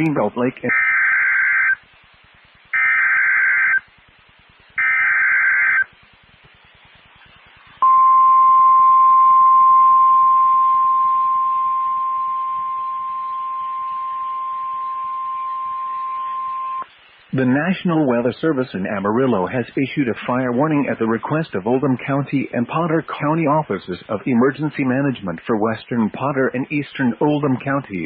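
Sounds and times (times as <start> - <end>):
digital header bursts: 4.8 - 5.9
steady warning alarm tone: 7.8 - 16.8.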